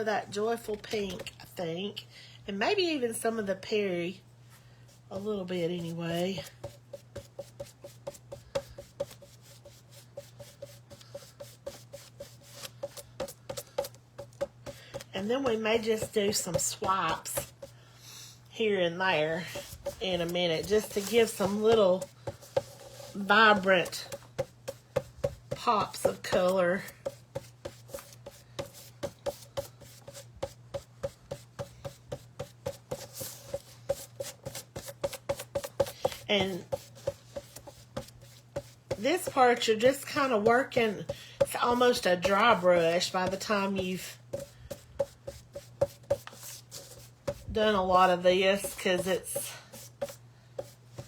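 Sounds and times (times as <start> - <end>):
low steady hum: 0.0 - 51.0
paintbrush tapping and brushing: 0.6 - 1.4, 4.9 - 17.8, 19.1 - 51.0
paintbrush swiping on canvas: 6.1 - 14.8, 19.5 - 25.4.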